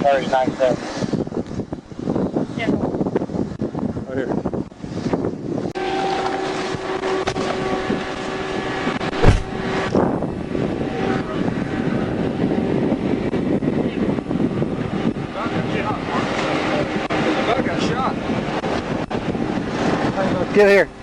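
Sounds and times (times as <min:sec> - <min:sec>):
wind buffeting microphone: 0:00.0 - 0:21.0
sharp thump: 0:09.1 - 0:10.0.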